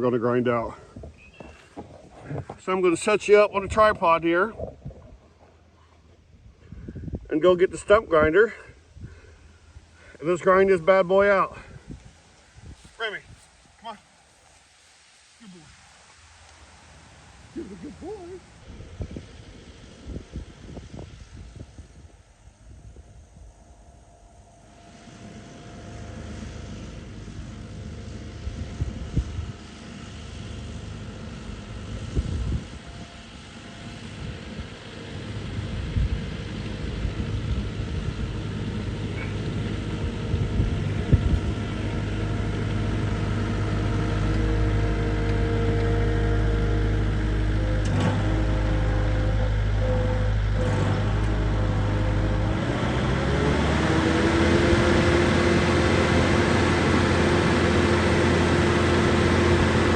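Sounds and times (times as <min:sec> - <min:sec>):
track loader diesel engine: 0:23.4 - 0:59.9.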